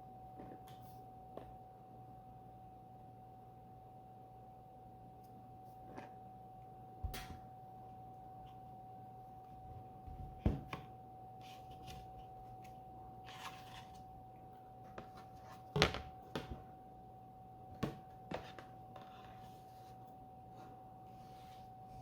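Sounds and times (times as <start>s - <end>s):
faint steady tone: 0.0s - 15.0s.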